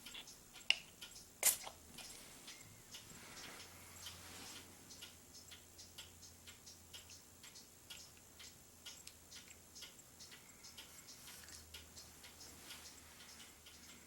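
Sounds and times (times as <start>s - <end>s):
faint even ticking: 0.0s - 14.0s
low steady hum: 0.0s - 14.0s.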